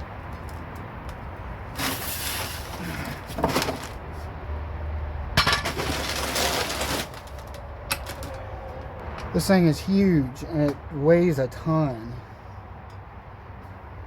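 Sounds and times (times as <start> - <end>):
cardboard box rustling and scraping: 1.7 - 4.0, 5.6 - 7.5.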